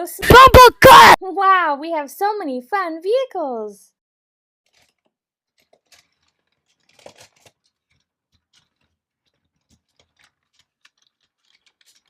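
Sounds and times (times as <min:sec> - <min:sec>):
plastic toy vehicles rattling: 0:04.7 - 0:12.0.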